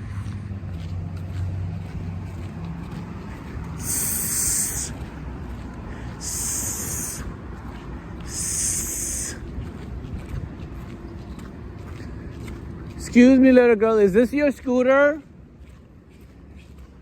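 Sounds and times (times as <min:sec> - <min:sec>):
hissing bursts: 0:03.8 - 0:05.0, 0:06.2 - 0:07.2, 0:08.3 - 0:09.4.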